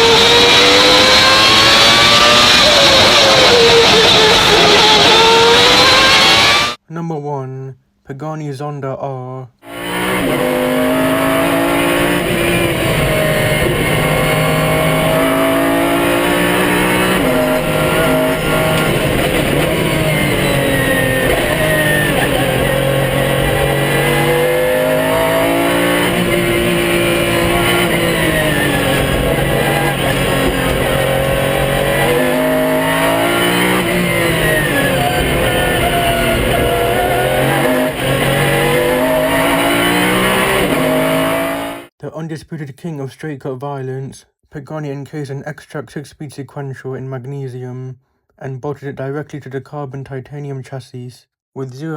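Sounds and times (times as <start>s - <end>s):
sports car engine revving through gears: 0.0s - 6.8s, 9.6s - 41.9s
gearbox whine: 12.2s - 41.9s.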